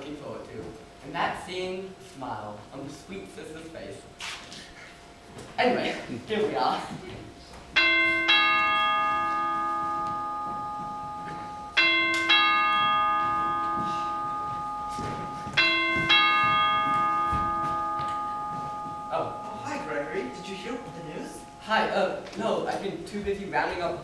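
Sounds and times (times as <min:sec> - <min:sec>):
ding-dong doorbell chime: 0:07.8 - 0:22.2.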